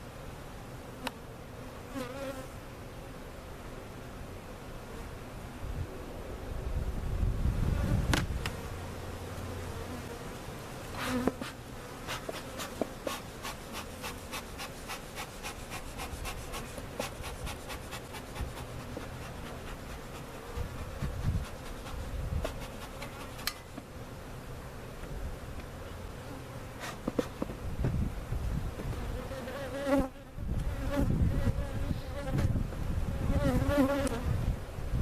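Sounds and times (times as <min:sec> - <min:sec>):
bees buzzing: 0:07.7 - 0:28.2, 0:28.8 - 0:34.4.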